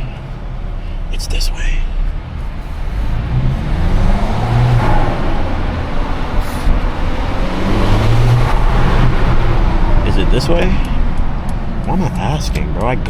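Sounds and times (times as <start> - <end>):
car engine running at low speed: 0.0 - 13.0.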